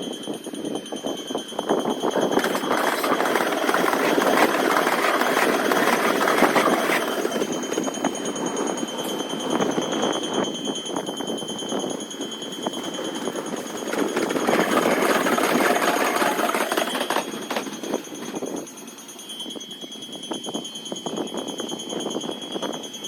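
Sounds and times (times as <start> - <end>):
level crossing warning bell: 0.0 - 23.0
train passing: 1.5 - 19.2
wheels clicking over rail joints: 1.6 - 19.3.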